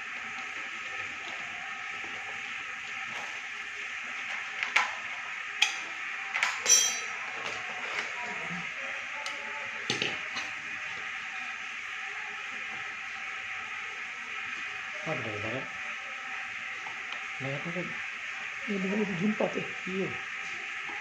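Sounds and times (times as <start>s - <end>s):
metal tools clinking: 6.6s - 7.1s.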